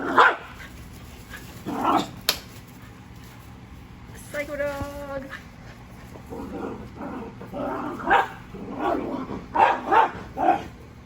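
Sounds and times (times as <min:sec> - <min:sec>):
dog barking: 0:00.1 - 0:00.5, 0:08.0 - 0:09.0, 0:09.6 - 0:10.7.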